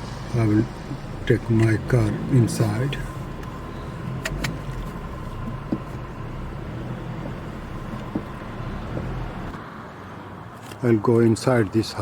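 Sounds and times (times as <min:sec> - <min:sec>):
car engine low hum: 0:00.0 - 0:09.6.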